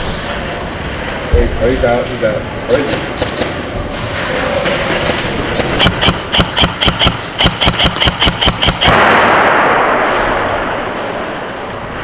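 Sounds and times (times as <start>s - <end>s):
loud steady rushing noise: 0.0s - 12.0s
airsoft rifle shots: 2.9s - 3.6s, 4.6s - 11.0s.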